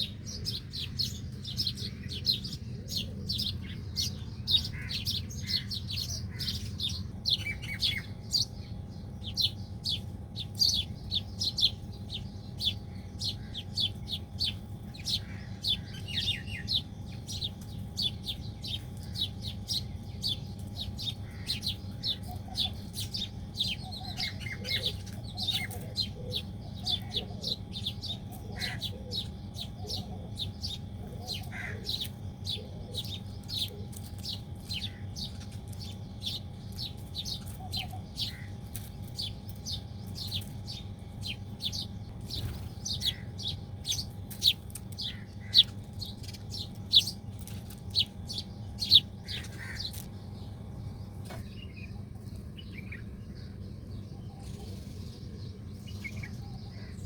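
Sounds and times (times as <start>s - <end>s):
faint steady hum: 0.0s - 57.0s
lower bird calls: 0.0s - 57.0s
small birds chirping: 0.0s - 57.0s.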